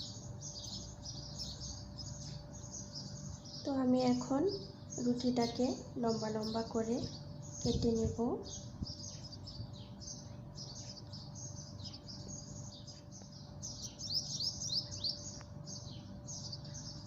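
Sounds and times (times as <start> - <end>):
faint steady hum: 0.0 - 17.0
small birds chirping: 0.0 - 17.0.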